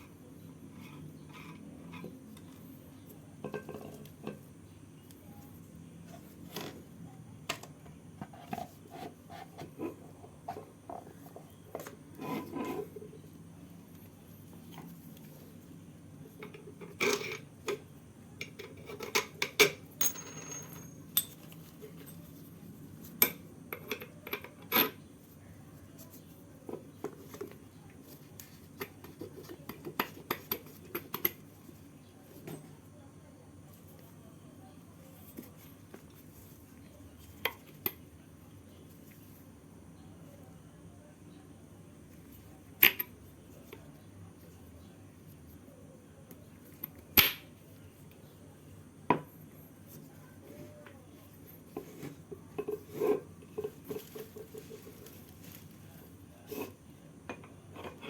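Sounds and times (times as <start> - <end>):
metal tools clinking: 20.0 - 22.2.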